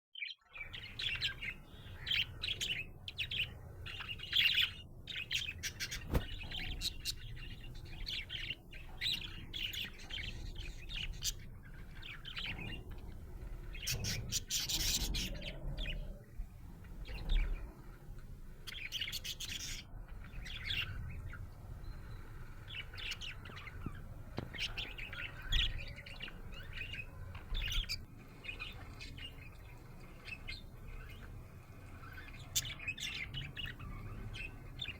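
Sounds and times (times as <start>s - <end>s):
budgerigar chirping and warbling: 13.7s - 16.2s.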